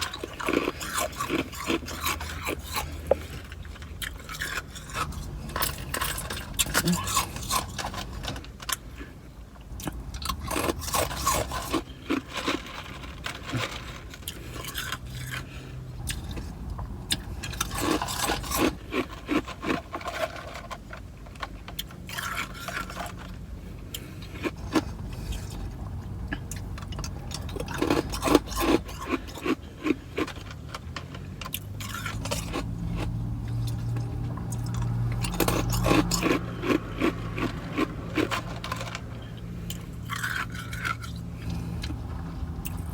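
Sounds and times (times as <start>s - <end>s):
ice crunched between teeth: 0.0s - 8.4s, 9.8s - 15.5s, 17.4s - 20.6s, 22.1s - 23.3s, 26.9s - 30.8s, 34.5s - 39.1s, 39.7s - 41.2s
low steady hum: 0.0s - 42.9s.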